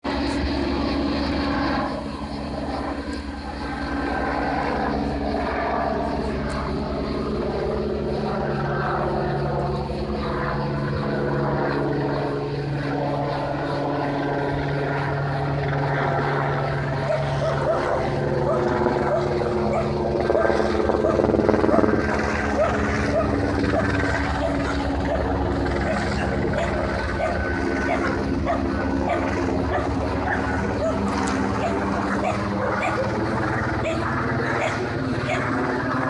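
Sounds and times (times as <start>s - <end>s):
steady mechanical drone: 0.0s - 36.0s
flock of birds chattering: 21.8s - 36.0s.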